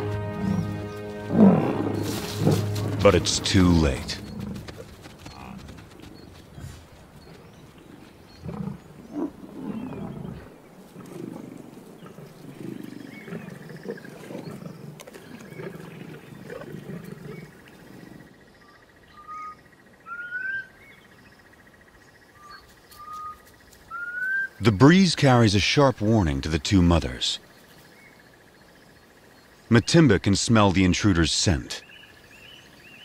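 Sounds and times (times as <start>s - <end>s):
lions growling: 0.4s - 18.3s
rising bird chirps: 18.5s - 24.6s.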